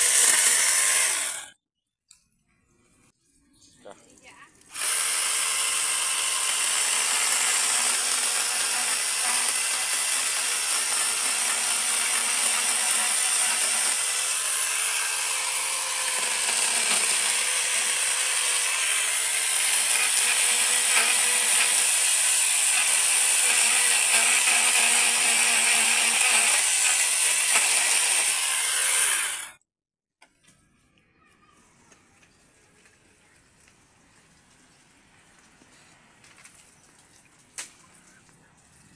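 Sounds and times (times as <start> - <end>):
mini chainsaw cutting bamboo: 0.0 - 1.6, 4.7 - 29.6.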